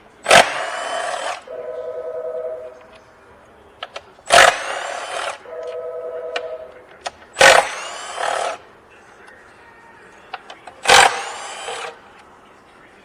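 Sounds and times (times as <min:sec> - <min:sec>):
power tool bursts: 0:00.2 - 0:03.0, 0:03.8 - 0:08.6, 0:10.3 - 0:12.2.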